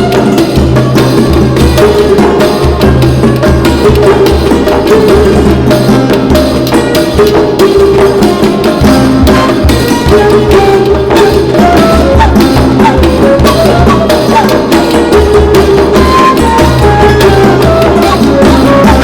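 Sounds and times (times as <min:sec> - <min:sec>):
music with percussion beat: 0:00.0 - 0:19.0.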